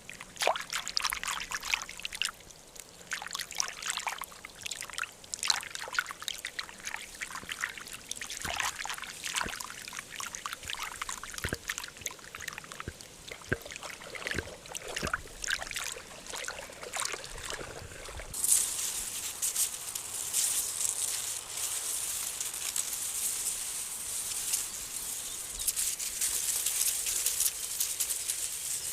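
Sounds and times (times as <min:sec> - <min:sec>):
water trickling and dripping: 0:00.0 - 0:19.0.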